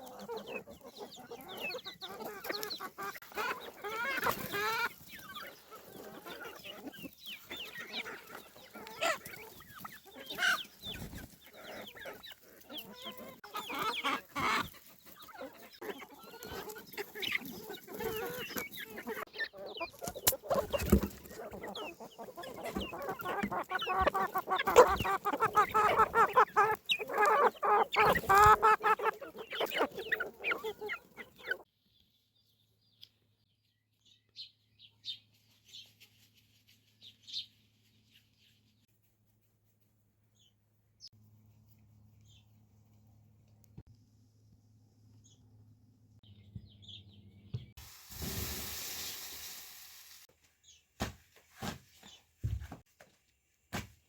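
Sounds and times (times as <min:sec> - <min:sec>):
chickens clucking: 0:00.0 - 0:31.7.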